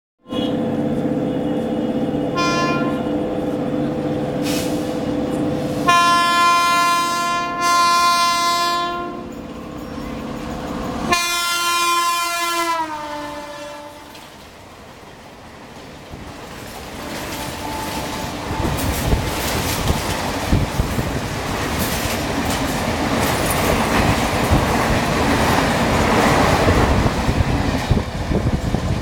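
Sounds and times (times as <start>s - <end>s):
locomotive air horn: 0.2s - 3.2s, 5.7s - 9.3s, 11.1s - 14.3s, 17.0s - 19.0s.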